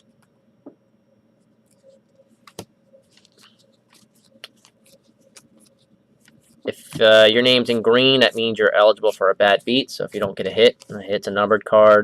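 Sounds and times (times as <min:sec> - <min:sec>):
trading cards shuffled: 0:01.7 - 0:11.2.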